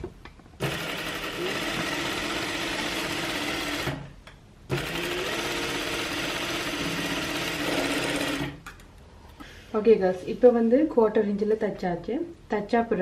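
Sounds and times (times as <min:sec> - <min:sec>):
sewing machine stitching: 0:00.6 - 0:04.1, 0:04.7 - 0:08.6.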